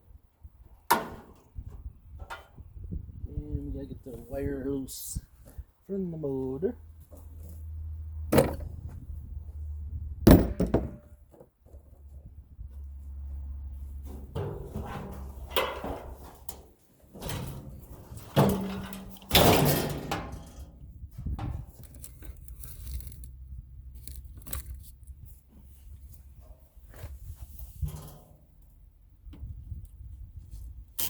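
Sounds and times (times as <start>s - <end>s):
loud metal bangs: 10.2s - 11.1s
metal parts clanking and rattling: 10.3s - 11.1s, 14.1s - 20.7s.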